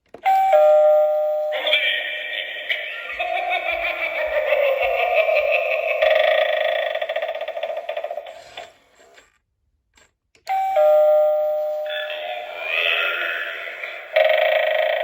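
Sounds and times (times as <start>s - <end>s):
doorbell ding-dong chime: 0.2s - 1.6s, 10.5s - 12.5s.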